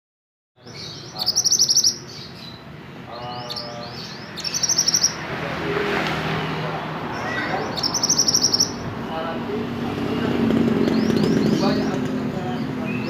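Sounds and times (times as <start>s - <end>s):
songbird high trills: 0.6s - 2.6s, 3.2s - 5.2s, 7.2s - 8.8s
songbird sliding chirps: 0.7s - 2.4s, 3.5s - 5.3s, 7.7s - 8.8s.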